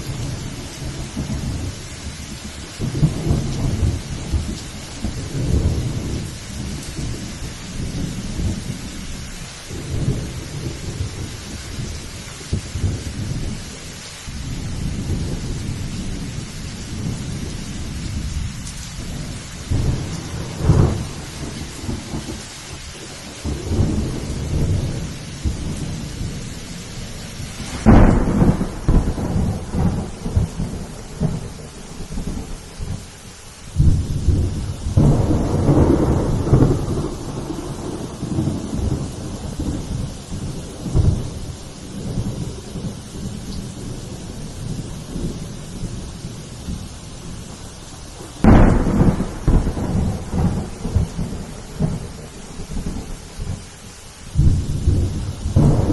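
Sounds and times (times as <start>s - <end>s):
thunder rolling: 0.0s - 1.8s, 2.8s - 8.7s, 14.4s - 33.0s, 33.8s - 53.6s, 54.3s - 55.9s
rain hissing: 0.0s - 55.9s
thunder clap: 14.5s - 22.8s, 23.4s - 33.0s, 33.8s - 47.5s, 48.2s - 53.6s, 54.4s - 55.9s.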